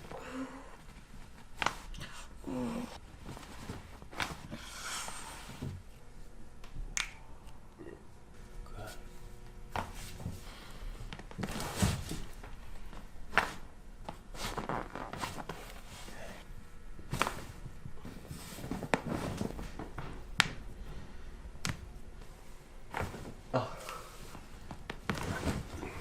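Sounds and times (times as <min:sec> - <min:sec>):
shuffling and rustling on table: 0:17.1 - 0:20.2.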